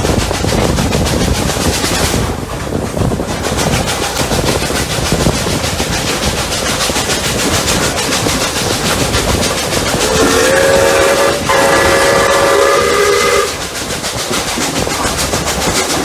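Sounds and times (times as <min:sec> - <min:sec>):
steam locomotive rhythmic beat: 0:00.0 - 0:16.0
steam locomotive whistle blasts: 0:10.0 - 0:13.6.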